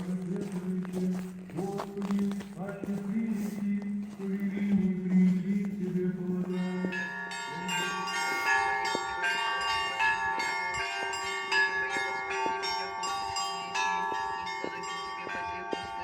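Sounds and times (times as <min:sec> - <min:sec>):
church bells ringing: 0:06.3 - 0:16.0.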